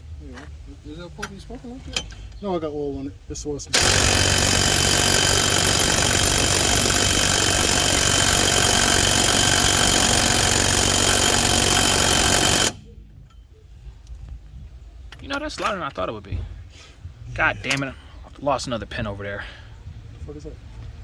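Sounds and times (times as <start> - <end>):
impact wrench hammering: 3.8 - 12.9.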